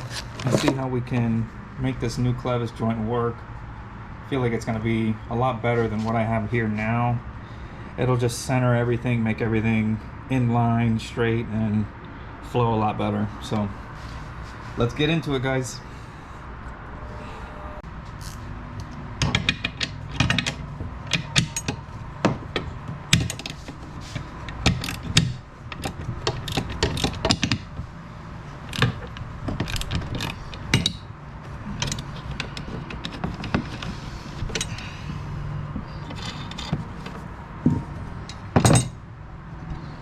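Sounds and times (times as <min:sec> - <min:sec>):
metal tools clinking: 0:19.2 - 0:21.9, 0:31.6 - 0:33.8, 0:34.5 - 0:34.9, 0:35.9 - 0:39.0.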